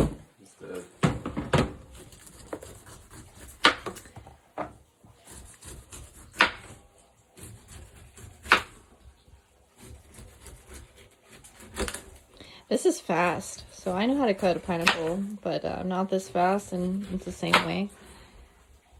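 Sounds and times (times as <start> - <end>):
knife chopping on wooden board: 1.0 - 8.8, 9.8 - 12.2, 13.9 - 15.3, 16.3 - 18.0.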